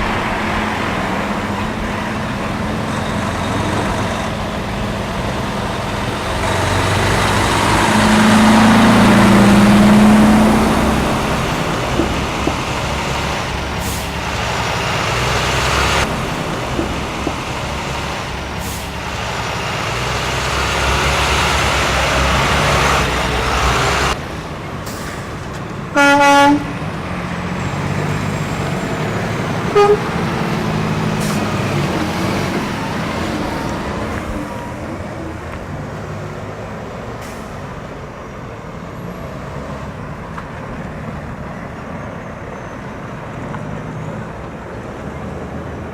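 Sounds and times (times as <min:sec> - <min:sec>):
truck engines and road noise: 0:00.0 - 0:45.9
truck horn blast: 0:25.9 - 0:26.8, 0:29.6 - 0:31.5.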